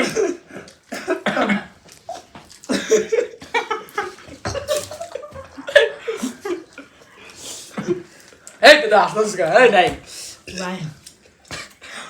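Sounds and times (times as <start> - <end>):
person coughing: 0.0 - 1.8.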